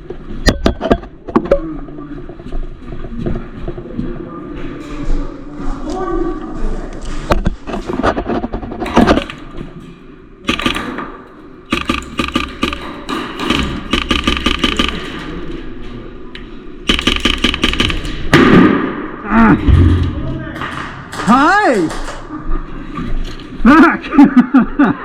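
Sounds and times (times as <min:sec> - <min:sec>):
airsoft guns firing: 0:10.4 - 0:15.5, 0:16.9 - 0:19.1.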